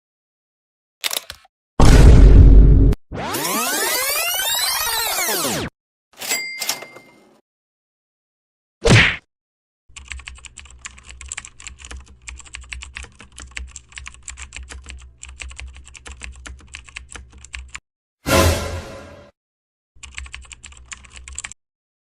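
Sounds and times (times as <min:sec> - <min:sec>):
keyboard typing clicks: 0:01.0 - 0:01.5.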